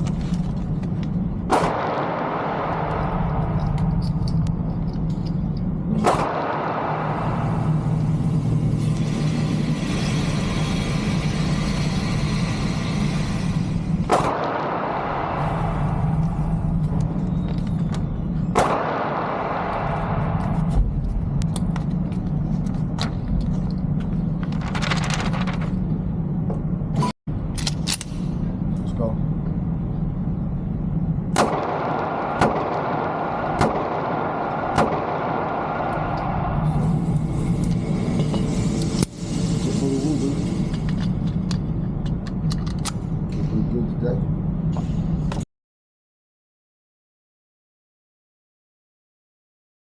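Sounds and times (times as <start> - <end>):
low rumble: 0.0 - 45.4
handgun shots: 1.5 - 3.1, 6.0 - 7.2, 31.4 - 36.2
gunshots: 1.5 - 3.5, 5.9 - 8.0, 14.1 - 16.4, 18.5 - 20.8, 31.3 - 37.0.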